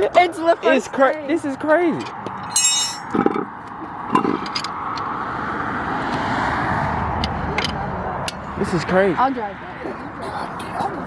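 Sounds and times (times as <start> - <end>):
car driving past: 4.8 - 9.9.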